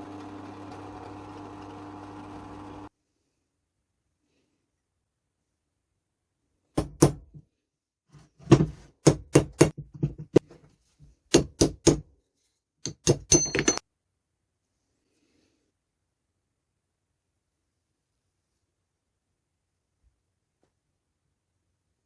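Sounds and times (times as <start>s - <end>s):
metal vise parts knocking: 12.8s - 13.8s.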